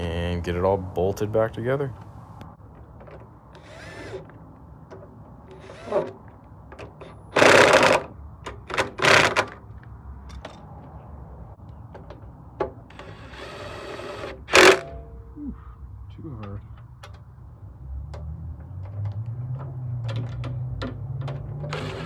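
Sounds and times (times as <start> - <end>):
power tool tightening bolts: 3.6 - 4.4, 5.5 - 6.2, 6.9 - 9.6, 12.9 - 15.0, 21.3 - 22.0.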